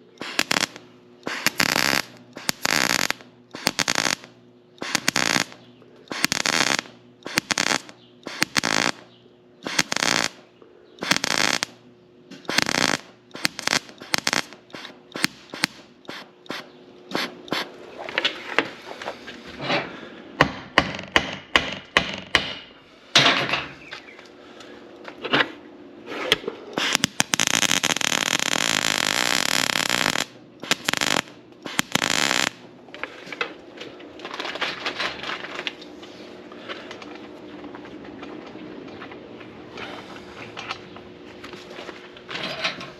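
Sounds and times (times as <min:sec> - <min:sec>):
arc welding crackling: 0:00.0 - 0:17.7, 0:26.7 - 0:33.1
steady hum: 0:00.0 - 0:42.9.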